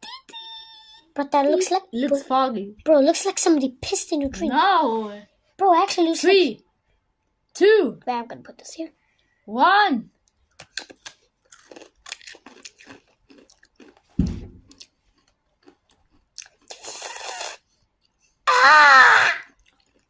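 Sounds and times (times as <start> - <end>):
chips crunching: 10.5 - 17.1, 19.5 - 20.0
low thump: 14.2 - 14.7
person exclaiming: 18.5 - 19.5.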